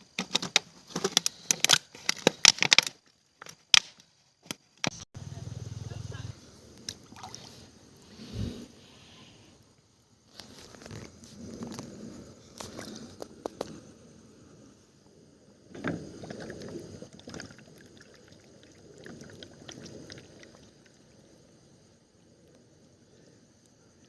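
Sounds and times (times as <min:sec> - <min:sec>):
water sloshing and splashing: 0:06.9 - 0:07.7, 0:15.8 - 0:21.0.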